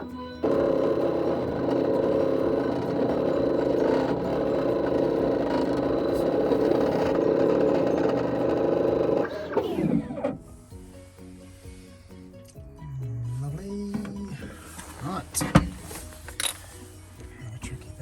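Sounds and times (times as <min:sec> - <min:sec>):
key cutting machine motor whine: 0:00.0 - 0:10.5.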